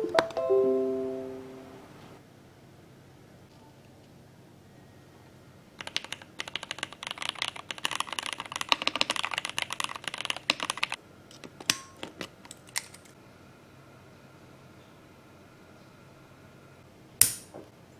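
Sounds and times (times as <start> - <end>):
mechanical keyboard typing: 5.8 - 11.0, 12.5 - 13.2.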